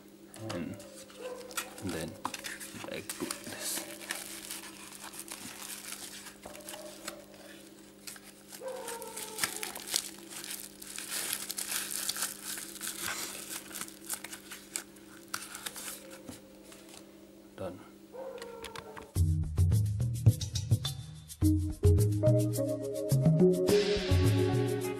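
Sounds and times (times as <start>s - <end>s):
packaging crinkling: 0.9s - 17.0s.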